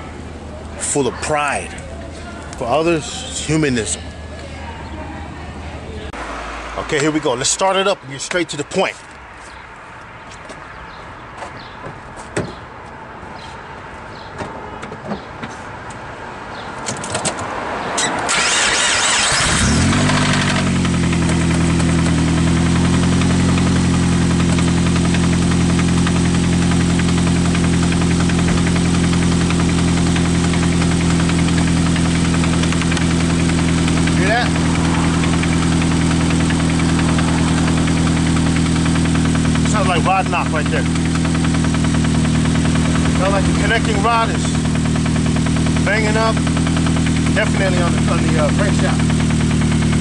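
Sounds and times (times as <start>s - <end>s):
car engine starting and idling: 0.0s - 8.9s, 15.9s - 50.0s
engine knocking: 18.4s - 50.0s.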